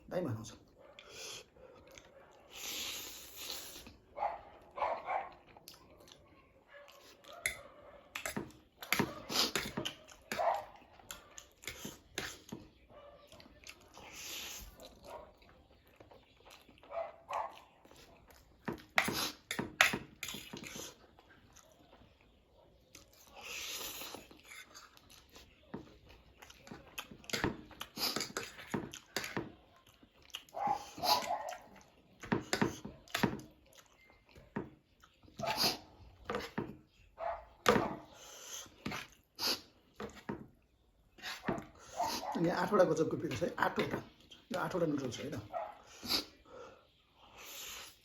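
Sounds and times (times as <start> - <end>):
wet chewing and smacking: 0.7 - 48.0
noodle slurping: 2.5 - 4.0, 8.9 - 9.8, 13.9 - 14.8, 23.2 - 25.3, 26.5 - 29.3, 35.4 - 36.6, 38.1 - 39.9.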